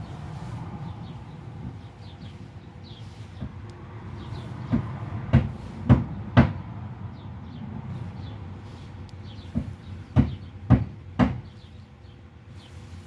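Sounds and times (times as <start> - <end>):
steady low rumble: 0.0 - 11.1
sharp knocks: 4.7 - 6.6, 9.5 - 11.5.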